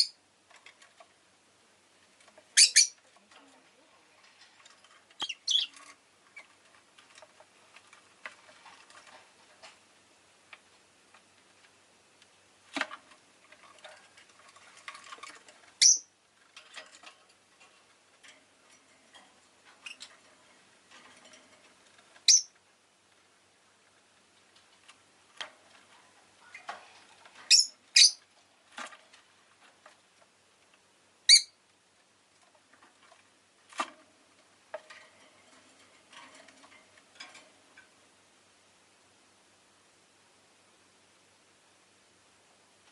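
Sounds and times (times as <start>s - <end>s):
bird chirping: 2.5s - 3.0s, 5.2s - 5.8s, 15.8s - 16.1s, 22.2s - 22.6s, 27.5s - 28.2s, 31.3s - 31.6s
soft bird chatter: 2.5s - 6.6s.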